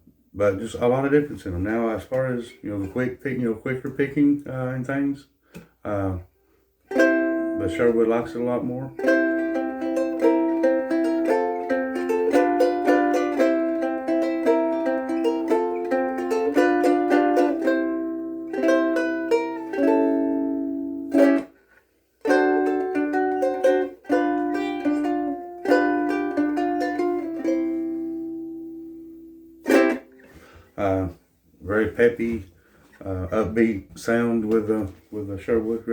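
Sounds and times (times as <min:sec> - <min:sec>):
ukulele fingerpicking: 0:06.9 - 0:30.4.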